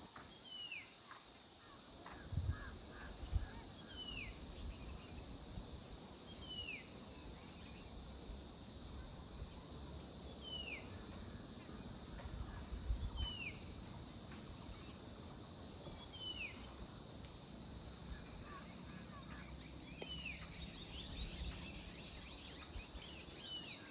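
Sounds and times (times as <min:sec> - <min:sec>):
insect chorus with fast ticking: 0:00.0 - 0:23.9.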